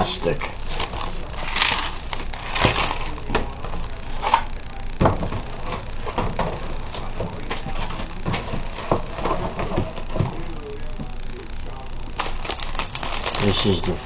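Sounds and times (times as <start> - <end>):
crackles and clicks: 0.3 - 14.0
plastic bag crinkling: 12.2 - 14.0.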